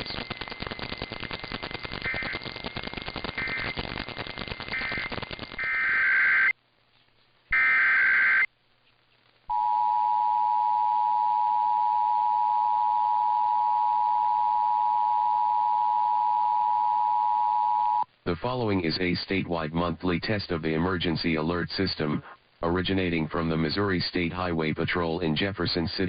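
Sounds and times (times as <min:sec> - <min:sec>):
harsh buzzing data bursts: 0:00.0 - 0:06.5, 0:07.5 - 0:08.5.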